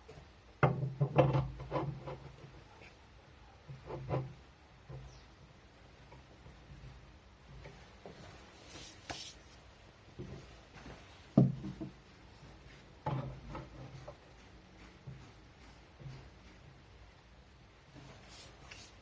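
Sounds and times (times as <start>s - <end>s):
light rubbing and scraping: 7.6s - 14.4s, 17.9s - 19.0s.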